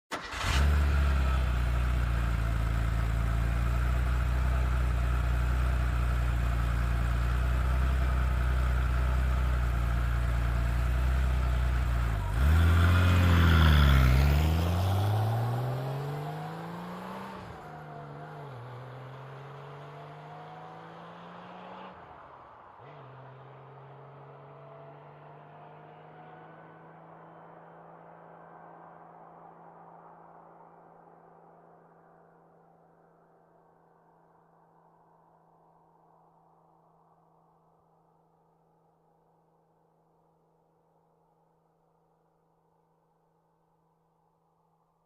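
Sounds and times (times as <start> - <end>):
car engine starting and idling: 0.0 - 21.1
car driving off: 0.1 - 29.1.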